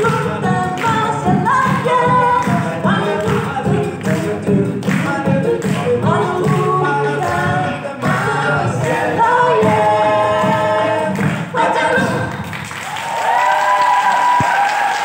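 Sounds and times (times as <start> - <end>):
group of voices singing: 0.0 - 12.7.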